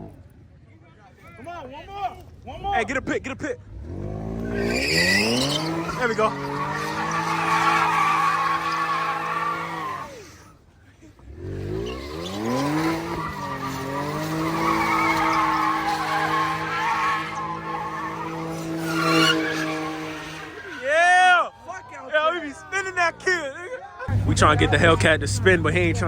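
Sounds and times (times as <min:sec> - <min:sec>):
car engine revving: 0:03.6 - 0:10.6, 0:11.2 - 0:20.9, 0:24.1 - 0:26.0
tyres squealing: 0:04.4 - 0:10.6, 0:11.6 - 0:23.6.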